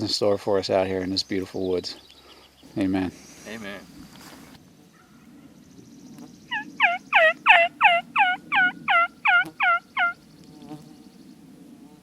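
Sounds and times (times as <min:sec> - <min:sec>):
turkey yelping: 0:06.5 - 0:10.2.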